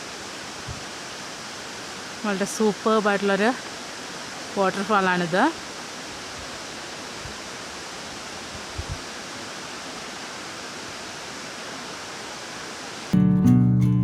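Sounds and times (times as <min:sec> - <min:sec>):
waterfall rushing: 0:00.0 - 0:13.2
acoustic guitar music: 0:13.1 - 0:14.0.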